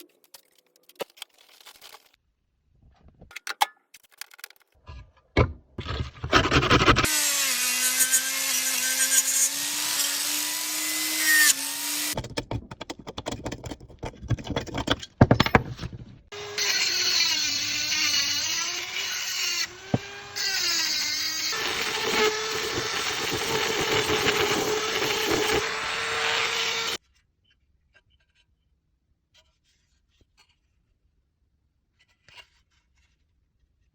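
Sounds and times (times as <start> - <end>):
electric power tool on steel: 6.4 - 12.2, 16.3 - 27.0.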